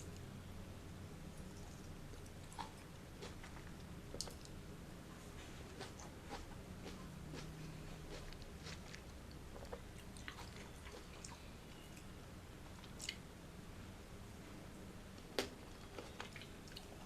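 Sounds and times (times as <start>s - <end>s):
crisp clicks and smacks: 1.7s - 4.6s, 15.1s - 16.9s
wet chewing and biting: 2.2s - 4.6s, 5.6s - 11.4s.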